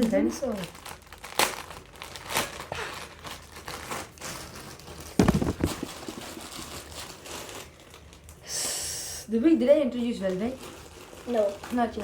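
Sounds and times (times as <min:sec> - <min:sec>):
crinkly wrapping rustling: 0:00.0 - 0:08.4, 0:09.6 - 0:12.0
loud thumps: 0:05.2 - 0:06.5.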